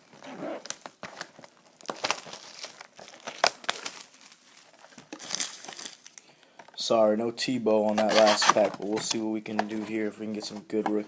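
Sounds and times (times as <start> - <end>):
plastic wrap crinkling and tearing: 0.0 - 6.3, 7.9 - 9.7.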